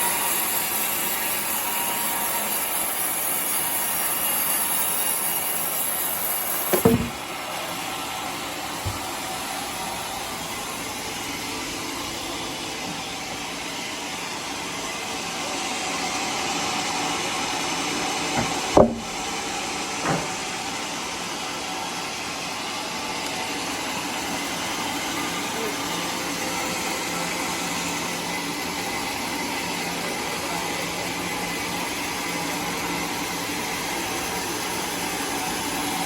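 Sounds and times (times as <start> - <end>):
sawmill machinery running: 0.0 - 36.0
short knocks: 6.7 - 7.2, 18.4 - 19.2.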